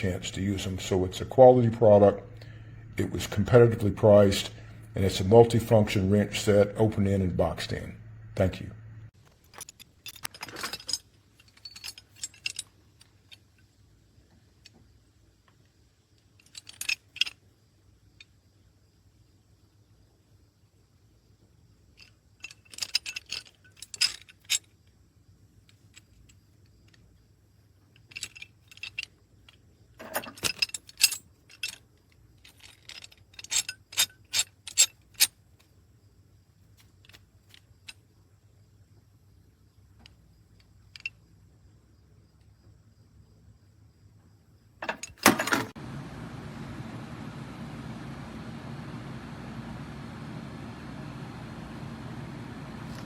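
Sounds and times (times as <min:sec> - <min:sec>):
metal wrenches clinking: 0:09.4 - 0:13.6, 0:16.4 - 0:17.4, 0:22.0 - 0:24.8, 0:27.9 - 0:35.4, 0:44.8 - 0:45.8
steady rushing hum: 0:45.8 - 0:53.0.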